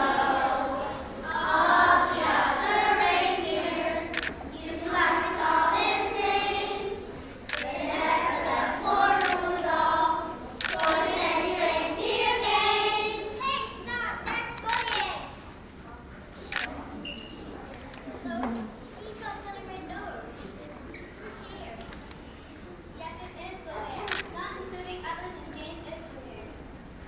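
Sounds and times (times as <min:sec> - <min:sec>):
children singing together: 0:00.0 - 0:13.5
sharp clicks: 0:10.6 - 0:11.0, 0:14.6 - 0:15.1.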